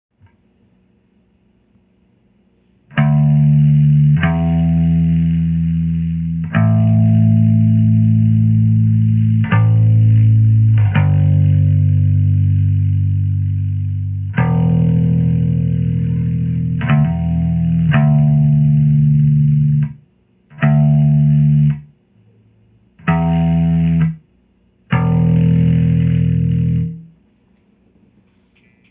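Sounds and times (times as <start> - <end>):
distorted bass guitar notes: 2.9 - 21.9, 23.0 - 24.2, 24.9 - 27.2.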